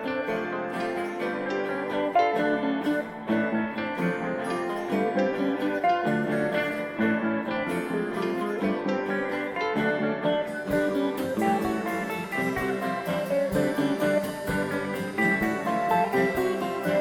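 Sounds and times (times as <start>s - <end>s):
guitar music over steady beat: 0.0s - 17.0s.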